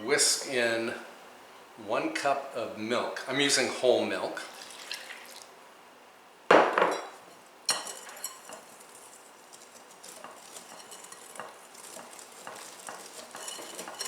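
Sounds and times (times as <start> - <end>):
whisk scraping a bowl: 7.7 - 14.0.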